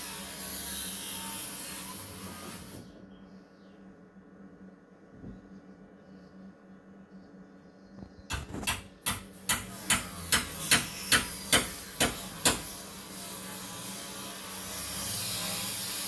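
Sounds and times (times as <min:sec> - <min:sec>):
hammer blows: 0:08.3 - 0:12.8.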